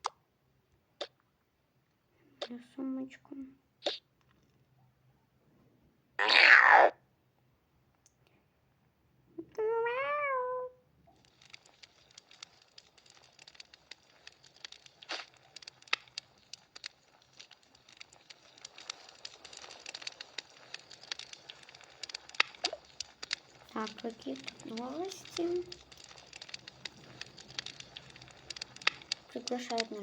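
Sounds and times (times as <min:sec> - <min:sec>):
cat meowing: 0:06.2 - 0:07.0, 0:09.8 - 0:10.8
light clicks and taps: 0:11.1 - 0:30.0.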